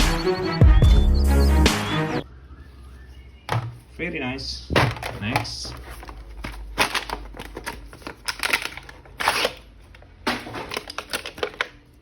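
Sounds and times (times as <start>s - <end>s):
plastic packaging crinkling: 4.9s - 12.0s.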